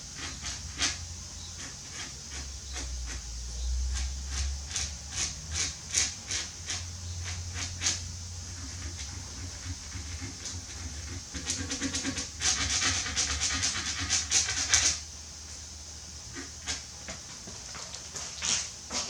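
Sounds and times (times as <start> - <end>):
quick scraping strokes on wood: 0.0 - 15.0, 16.3 - 19.0
steady low hum: 0.0 - 19.0.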